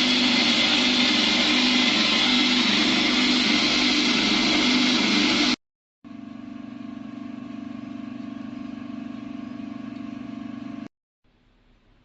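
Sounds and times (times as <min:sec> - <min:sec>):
electric grinder milling grains: 0:00.0 - 0:05.6.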